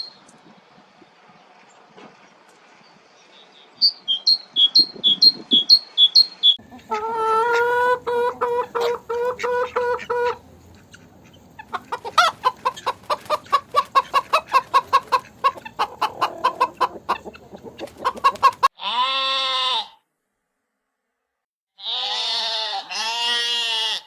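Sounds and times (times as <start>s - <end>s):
chickens clucking: 6.6s - 18.7s
loud animal call: 21.8s - 24.0s.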